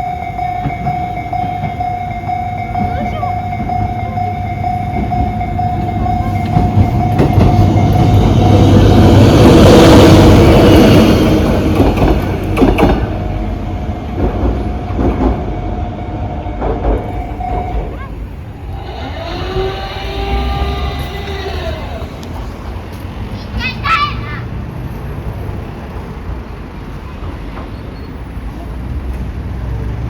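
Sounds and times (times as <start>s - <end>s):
crossing warning bell ringing: 0.0s - 22.6s
diesel locomotive passing: 0.0s - 30.0s
train wheel clicks: 4.7s - 8.3s, 10.8s - 13.4s.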